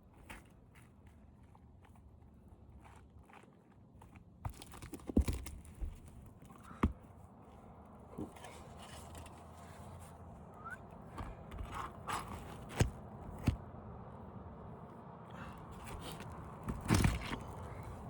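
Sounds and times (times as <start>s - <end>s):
knocks and scrapes on shingle roof: 4.3s - 7.2s, 11.0s - 13.7s, 15.6s - 18.0s.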